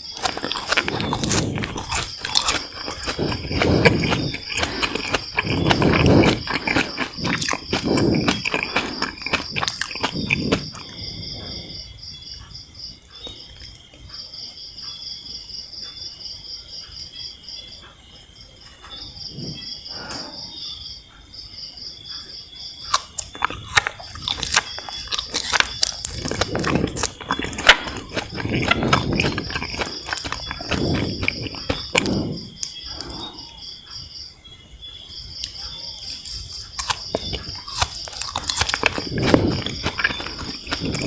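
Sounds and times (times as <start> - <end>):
chewing jelly candies: 0.0 - 12.4, 22.8 - 33.6, 35.2 - 41.0
insects chirping: 0.0 - 41.0.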